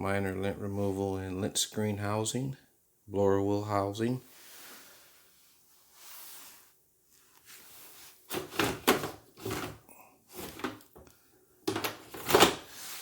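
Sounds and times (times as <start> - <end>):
dryer parts knocking and scraping: 8.3 - 12.7.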